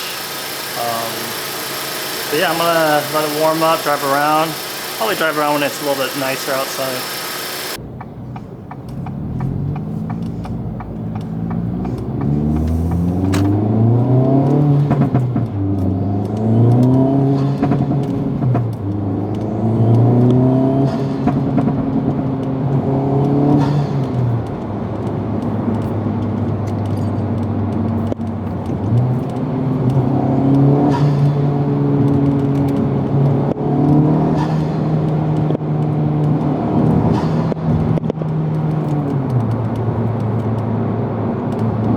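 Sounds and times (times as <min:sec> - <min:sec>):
bypass valve: 0:00.0 - 0:07.8
turbocharged car engine revving: 0:00.0 - 0:41.9.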